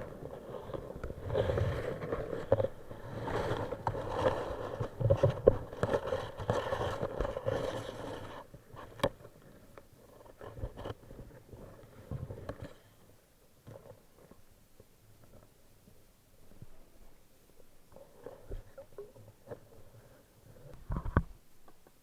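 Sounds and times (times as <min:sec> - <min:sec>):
muffled underwater scraping and knocking: 0:00.0 - 0:09.4, 0:17.9 - 0:21.9.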